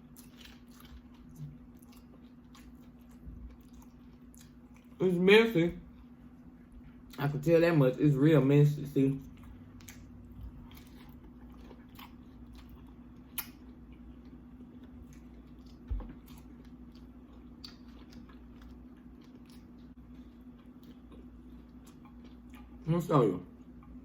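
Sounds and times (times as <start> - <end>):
person chewing: 0.0 - 5.0, 9.2 - 22.9
faint steady hum: 0.0 - 24.0.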